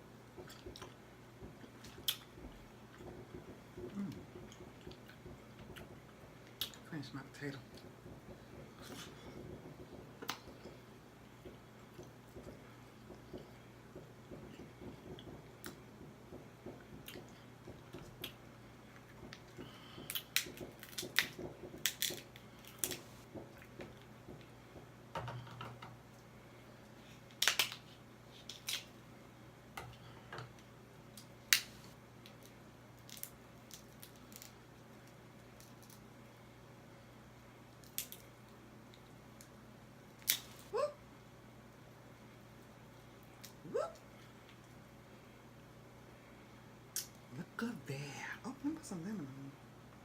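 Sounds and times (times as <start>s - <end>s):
soft chewing and mouth noises: 0.4s - 9.6s, 10.2s - 15.9s, 16.8s - 24.5s.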